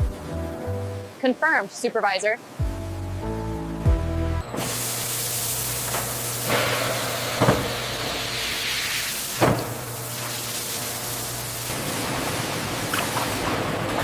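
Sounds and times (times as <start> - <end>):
low machine hum: 0.0 - 1.2, 2.6 - 14.0
steady hiss: 4.5 - 13.7.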